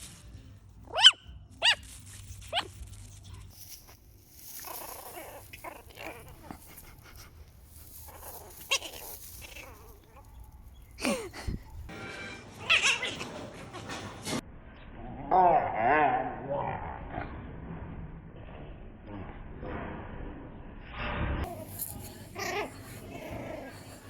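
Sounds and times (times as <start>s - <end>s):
puppy yipping: 0.9s - 2.8s, 7.9s - 11.0s, 12.6s - 13.3s
puppy grumbling: 4.6s - 11.7s, 21.4s - 24.0s
puppy whining: 4.6s - 11.8s, 12.6s - 13.8s, 21.4s - 24.0s.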